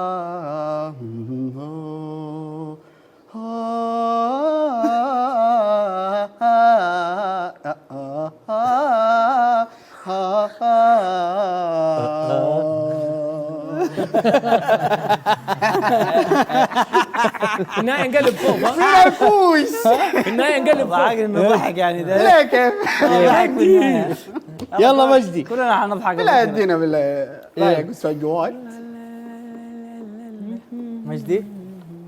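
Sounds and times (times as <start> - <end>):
man singing wordlessly: 0.0 - 15.0, 15.7 - 32.0
man laughing: 13.7 - 24.5.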